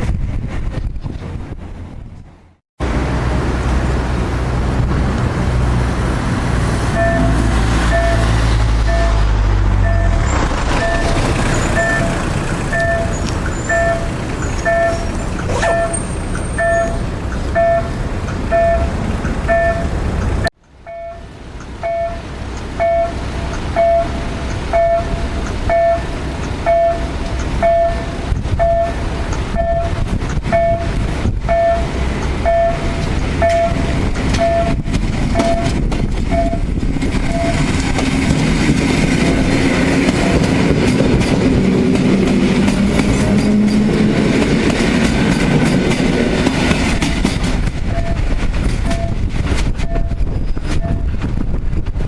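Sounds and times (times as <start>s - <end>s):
low vehicle rumble: 0.0s - 52.0s
level crossing bell beeps: 7.0s - 8.2s, 10.8s - 17.9s, 18.5s - 18.9s, 19.5s - 19.9s, 20.9s - 22.2s, 22.8s - 23.2s, 23.8s - 29.0s.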